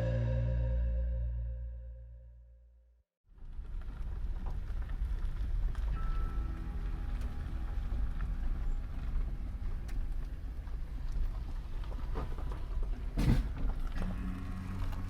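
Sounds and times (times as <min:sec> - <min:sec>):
engine drone: 0:00.0 - 0:02.0
road rumble inside vehicle: 0:03.3 - 0:15.0
vehicle jolt: 0:03.4 - 0:15.0.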